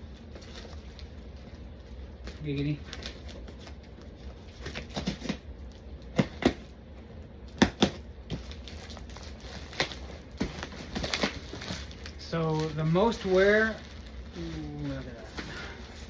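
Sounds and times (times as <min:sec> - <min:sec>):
packaging rustling: 0:00.0 - 0:06.7, 0:07.4 - 0:16.0.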